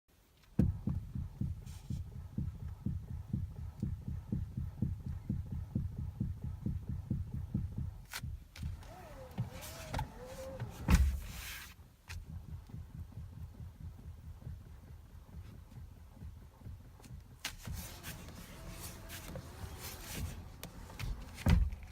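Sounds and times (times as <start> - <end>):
steering knocking: 0.6 - 21.9
loud thump: 9.4 - 11.4.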